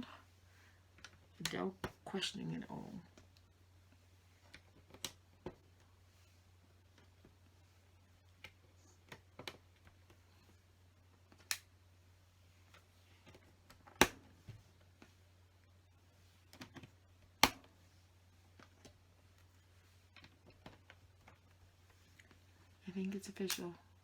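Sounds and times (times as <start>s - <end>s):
faint low hum: 0.0s - 24.0s
sharp plastic snaps: 4.5s - 5.6s, 11.3s - 11.7s, 13.3s - 14.3s, 16.5s - 17.7s, 23.4s - 23.8s.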